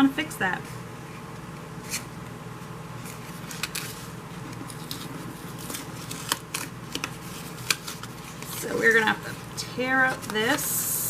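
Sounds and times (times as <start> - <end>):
steady low hum: 0.0 - 11.0
paper rustling and clicking: 3.0 - 9.2.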